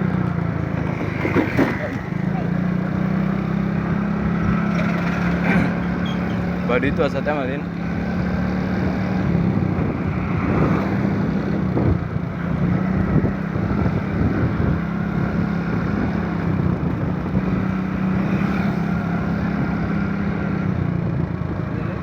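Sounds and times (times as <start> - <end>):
vehicle engine droning: 0.0 - 22.0
wind rushing over microphone: 8.3 - 18.3.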